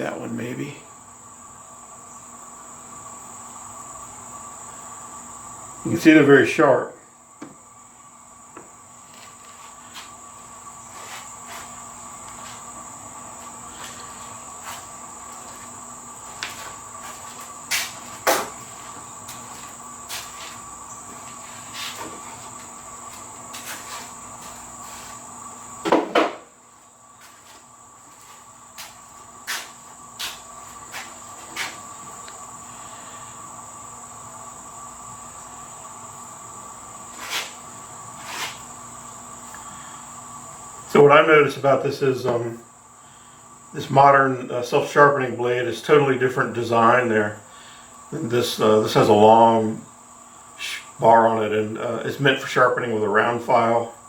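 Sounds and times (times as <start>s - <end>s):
steady high-pitched hum: 0.0s - 54.0s.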